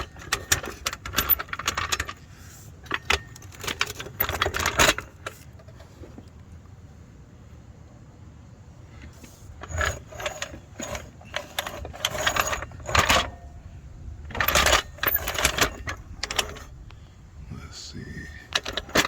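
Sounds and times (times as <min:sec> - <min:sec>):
metal jack clanking and rattling: 0:00.0 - 0:06.0, 0:09.2 - 0:13.6, 0:14.2 - 0:16.8, 0:18.5 - 0:19.0.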